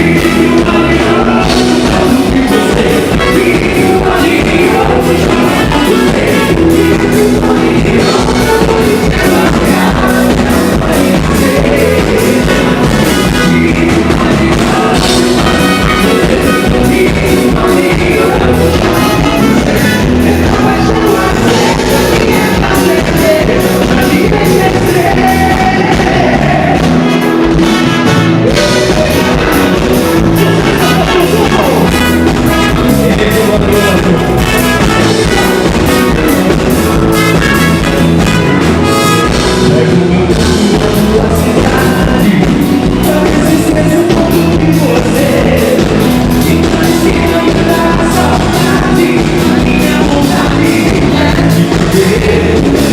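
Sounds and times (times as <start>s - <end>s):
lead singer singing: 0.0s - 52.9s
live band playing dance song: 0.0s - 52.9s
steady drum beat: 0.0s - 52.9s.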